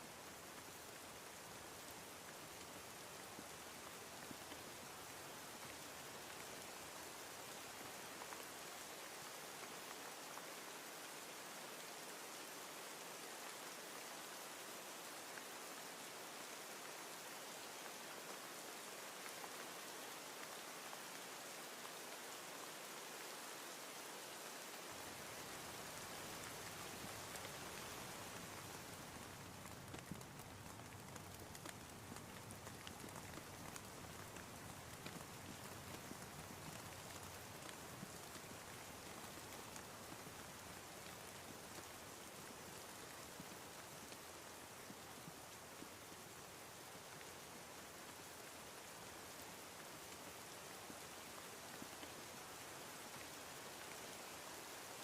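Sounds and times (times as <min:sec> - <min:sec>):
rain hissing: 0:00.0 - 0:55.0
raindrop ticks: 0:25.5 - 0:45.9.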